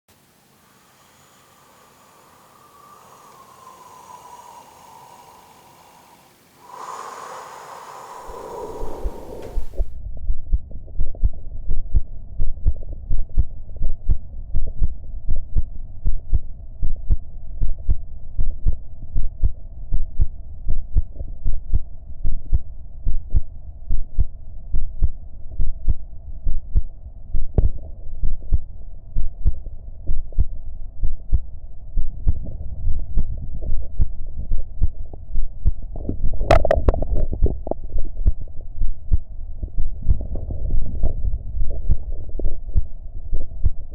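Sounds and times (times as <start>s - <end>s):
rustle or breath: 0.5s - 9.9s.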